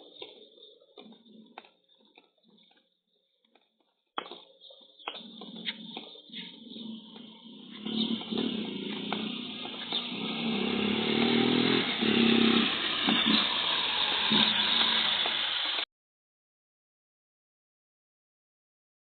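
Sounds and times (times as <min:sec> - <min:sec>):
vehicle engine approaching: 0:05.4 - 0:15.8.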